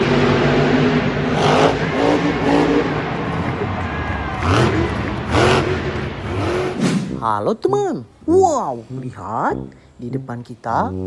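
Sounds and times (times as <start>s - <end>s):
vehicle engine revving: 0.0s - 7.3s.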